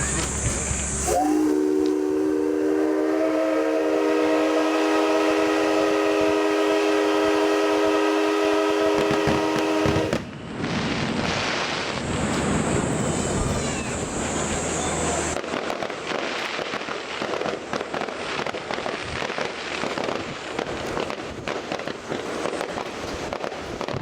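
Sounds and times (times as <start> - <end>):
locomotive whistle blast: 0.0 - 10.3.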